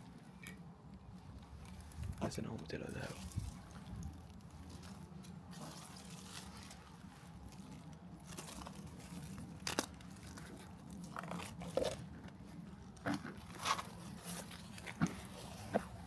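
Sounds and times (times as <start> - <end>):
low steady hum: 0.0 - 16.0
footsteps crunching over debris: 1.6 - 16.0
sharp cracks and snaps: 7.5 - 12.4.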